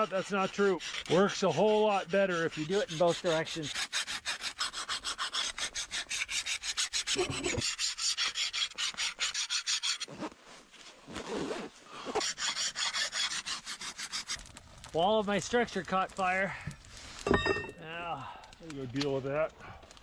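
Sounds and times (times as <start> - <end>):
metal file on knife blade: 0.0 - 10.1, 12.1 - 14.4.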